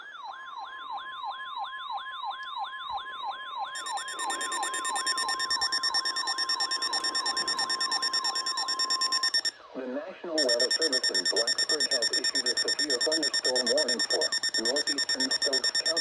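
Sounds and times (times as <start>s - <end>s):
sweeping electronic siren alarm: 0.0s - 9.5s, 10.4s - 16.0s
rapid high-pitched electronic beeping: 3.8s - 9.5s, 10.4s - 16.0s
steady warning alarm tone: 3.8s - 9.5s, 10.4s - 16.0s.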